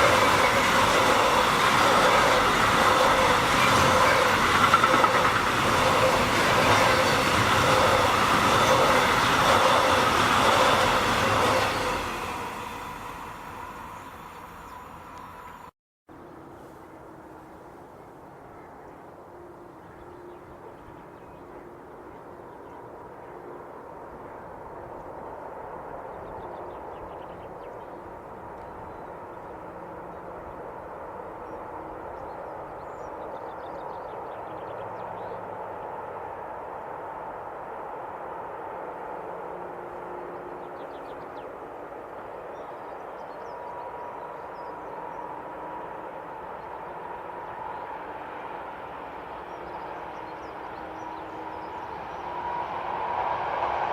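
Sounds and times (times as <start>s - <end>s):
distant train rumble: 0.0s - 15.7s, 16.4s - 53.9s
faint whine: 11.8s - 15.7s.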